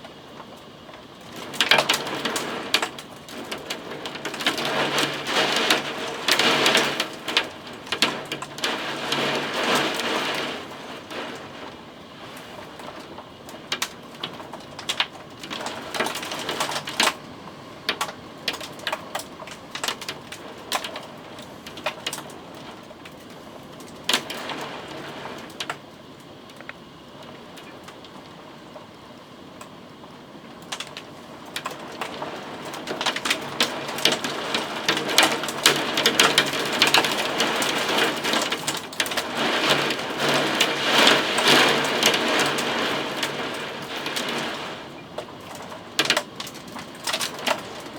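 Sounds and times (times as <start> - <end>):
rain falling: 0.0 - 47.9.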